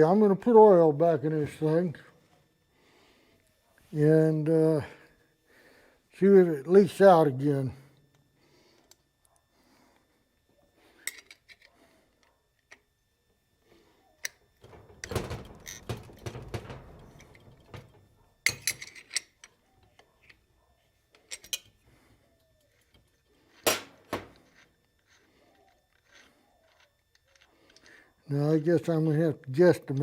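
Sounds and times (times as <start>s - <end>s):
metallic clinks and knocks: 14.2s - 20.5s, 21.1s - 22.0s, 22.6s - 28.0s.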